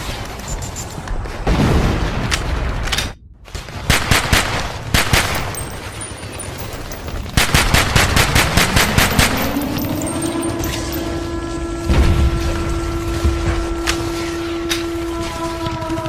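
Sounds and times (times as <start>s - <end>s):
machine-gun fire: 3.7s - 9.8s
low rising tone: 8.4s - 15.3s.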